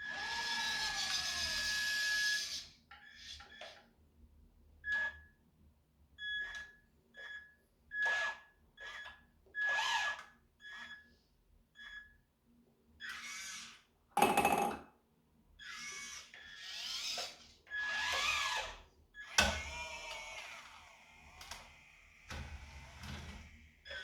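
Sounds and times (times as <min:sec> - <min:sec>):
small electric motors whining: 0:00.0 - 0:03.4, 0:09.6 - 0:10.2, 0:13.1 - 0:13.8, 0:15.6 - 0:24.0.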